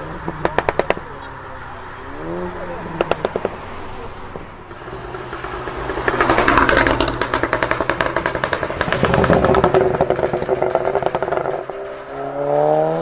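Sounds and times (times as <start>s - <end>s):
car engine revving: 2.0s - 13.0s
exhaust pops and crackles: 4.4s - 13.0s.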